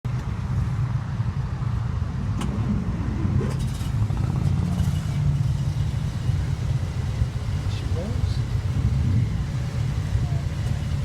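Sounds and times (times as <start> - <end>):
car engine idling: 0.2 - 11.0.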